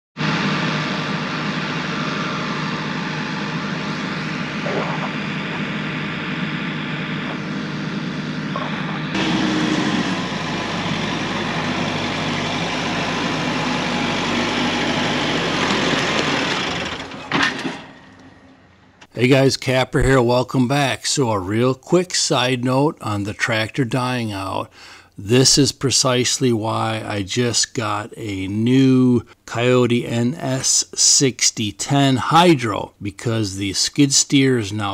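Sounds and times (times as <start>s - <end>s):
tractor engine running: 0.2s - 19.0s.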